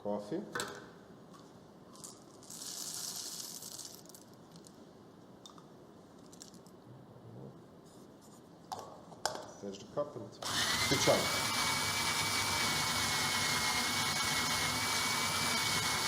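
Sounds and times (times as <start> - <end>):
coffee beans pouring: 1.9 - 4.8.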